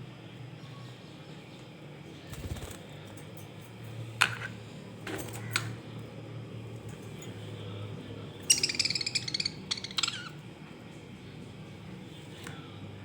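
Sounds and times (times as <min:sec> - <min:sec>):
steady low hum: 0:00.0 - 0:13.0
budgies clicking and tapping: 0:08.5 - 0:10.4.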